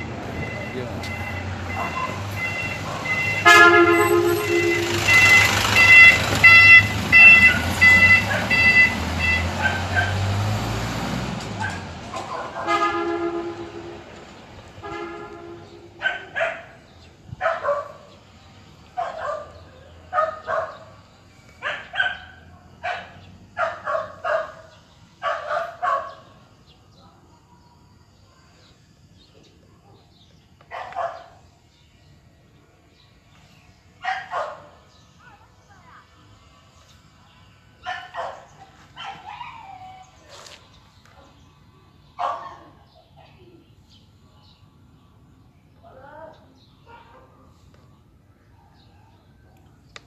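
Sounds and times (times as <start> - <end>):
pulsing beep: 0.0 - 3.4, 4.0 - 9.4
horn honking: 0.0 - 10.2, 12.6 - 16.0
dog barking: 1.7 - 2.2, 2.8 - 3.2, 8.3 - 8.6, 9.6 - 10.2, 11.6 - 12.9, 16.0 - 16.8, 17.4 - 18.1, 19.0 - 20.9, 21.6 - 26.3, 30.7 - 31.4, 34.0 - 34.8, 37.8 - 39.6, 42.2 - 42.9, 46.8 - 47.5.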